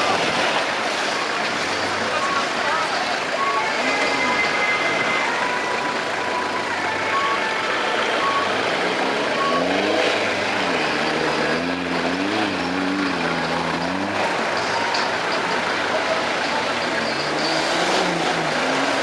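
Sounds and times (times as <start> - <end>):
off-road vehicle engine revving: 0.0 - 19.0
short high beeps: 3.3 - 11.5.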